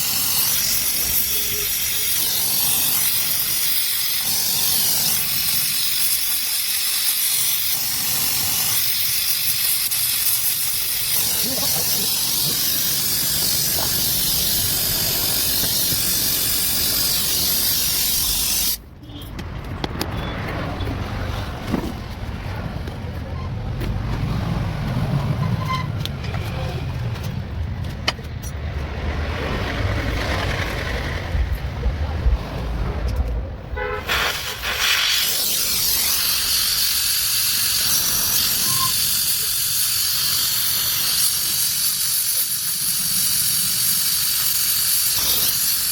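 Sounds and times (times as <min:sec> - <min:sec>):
welding torch flame hissing: 0:00.0 - 0:18.8, 0:34.0 - 0:45.9
low rumble: 0:20.5 - 0:33.8.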